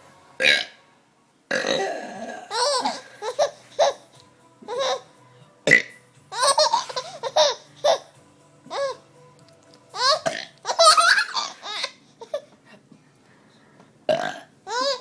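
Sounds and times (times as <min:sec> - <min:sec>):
baby giggling: 0:02.4 - 0:04.0, 0:04.6 - 0:05.1, 0:06.3 - 0:08.1, 0:09.9 - 0:12.5, 0:14.7 - 0:15.0.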